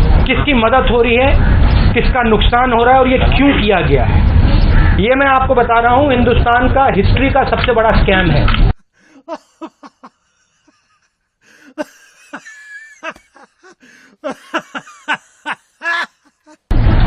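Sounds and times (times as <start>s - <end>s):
person laughing: 9.1s - 16.7s
high-pitched giggle squeal: 11.7s - 16.7s.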